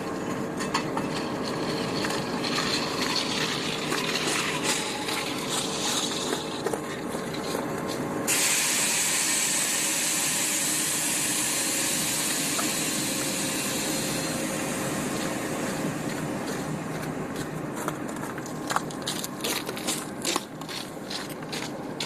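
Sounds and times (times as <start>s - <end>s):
locomotive diesel engine running: 0.0s - 22.0s
air brakes hissing: 8.3s - 16.1s.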